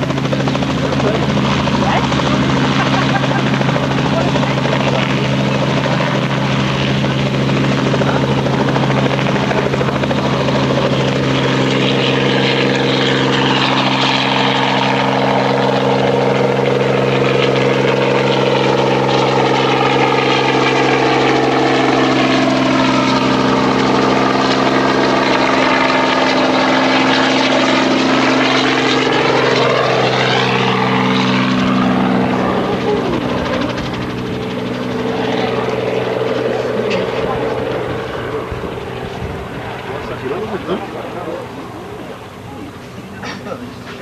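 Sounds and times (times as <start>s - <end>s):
helicopter rotor and engine: 0.0s - 44.0s.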